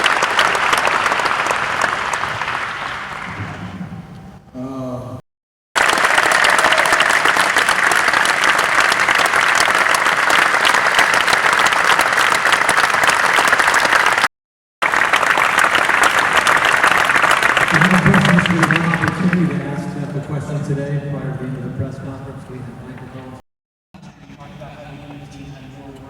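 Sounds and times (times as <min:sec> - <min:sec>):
arena crowd applauding: 0:00.0 - 0:03.8, 0:05.8 - 0:21.0.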